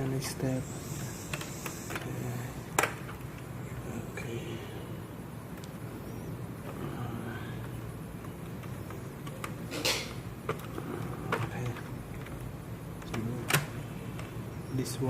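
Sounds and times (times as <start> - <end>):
steady low hum: 0.0 - 15.0
clicks and taps of laptop parts: 2.8 - 3.3, 8.2 - 14.4.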